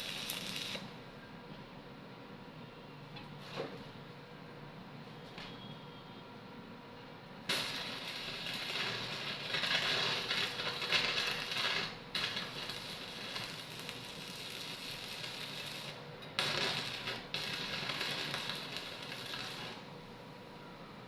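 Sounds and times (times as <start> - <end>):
arc welding crackle: 0.0 - 0.9, 7.4 - 20.0.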